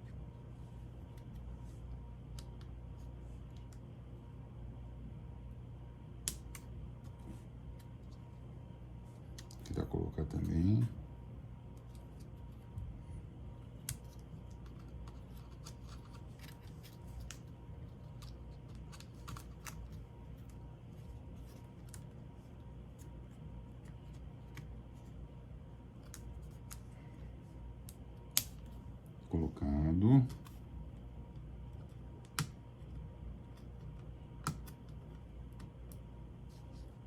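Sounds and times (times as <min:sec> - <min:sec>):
low steady hum: 0:00.0 - 0:37.0.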